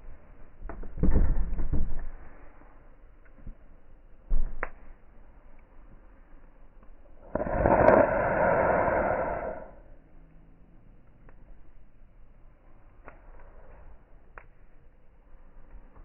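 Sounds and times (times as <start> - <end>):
campfire crackling: 1.6 - 16.0
loud rushing whoosh of air: 7.2 - 9.8.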